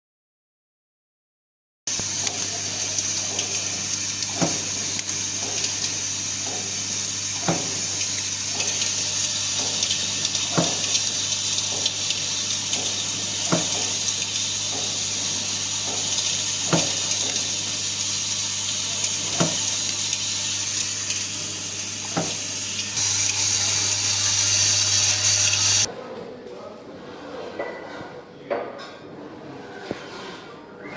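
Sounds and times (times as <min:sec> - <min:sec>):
motor hum: 0:01.9 - 0:25.9.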